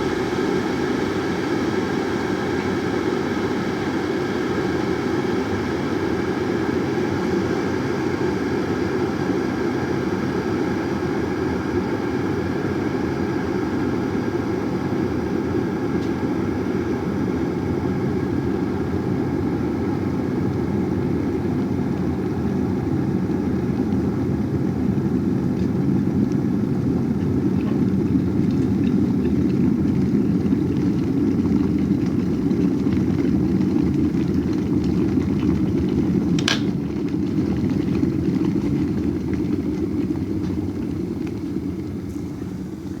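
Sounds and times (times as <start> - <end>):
electric kettle boiling water: 0.0 - 43.0.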